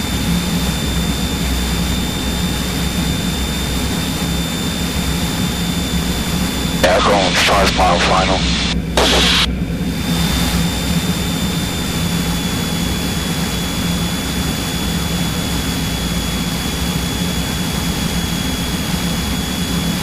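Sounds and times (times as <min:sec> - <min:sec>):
thin high whine: 0:06.8 - 0:09.5
aircraft engine droning in cabin: 0:10.6 - 0:20.0.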